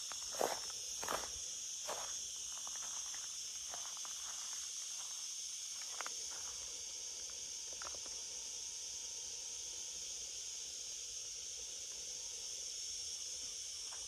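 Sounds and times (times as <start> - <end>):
insect chorus hissing: 0.0 - 14.0.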